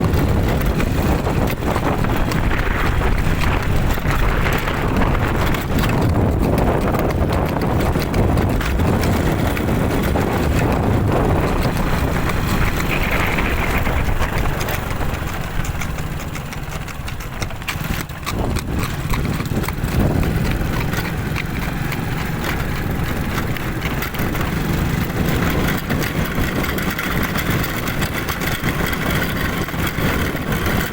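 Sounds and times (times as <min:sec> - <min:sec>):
steady low rumble: 0:00.0 - 0:23.9
horse hooves striking ground: 0:00.0 - 0:30.9.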